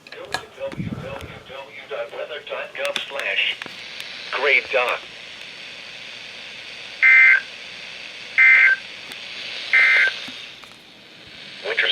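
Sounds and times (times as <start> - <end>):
steady hiss: 0.1 - 11.9
data tone bursts: 7.0 - 7.5, 8.4 - 8.8, 9.7 - 10.2.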